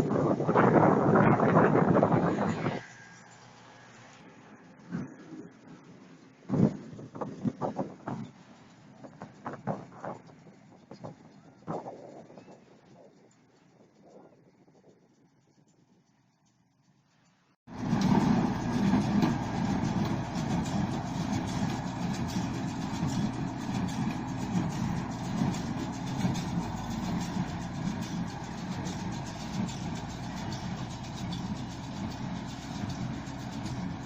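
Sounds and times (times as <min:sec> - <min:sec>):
engine droning: 0:00.0 - 0:16.4, 0:17.7 - 0:34.0
mechanical rattle: 0:07.3 - 0:34.0.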